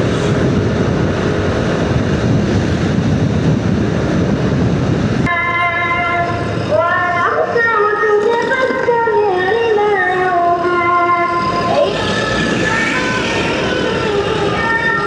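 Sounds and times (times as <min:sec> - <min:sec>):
wind and motorcycle road rumble: 0:00.0 - 0:05.3, 0:06.2 - 0:15.0
gliding singing-like melody: 0:05.3 - 0:15.0.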